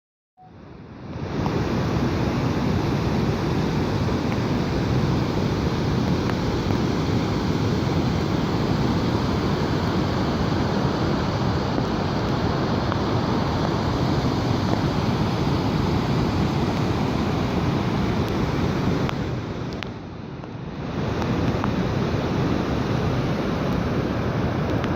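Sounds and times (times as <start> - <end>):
heavy rain: 1.2 - 20.1, 20.7 - 24.9.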